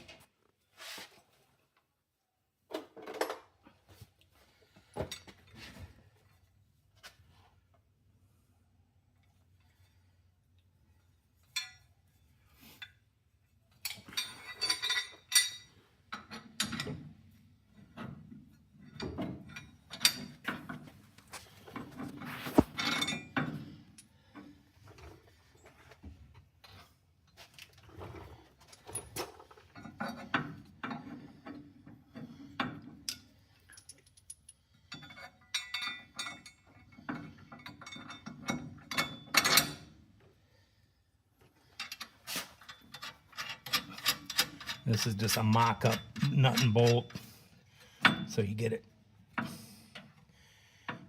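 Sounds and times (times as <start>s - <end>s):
metal tools clinking: 13.8s - 16.9s, 33.1s - 36.9s, 41.8s - 47.3s.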